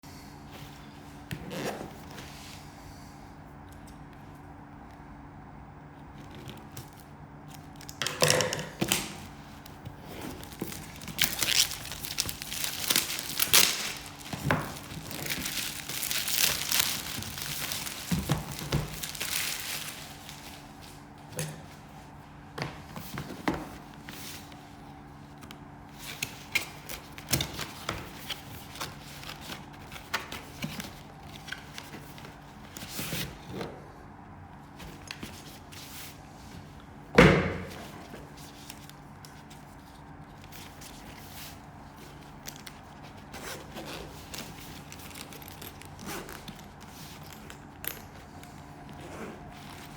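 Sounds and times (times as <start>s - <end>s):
packaging crinkling and tearing: 9.6s - 20.8s.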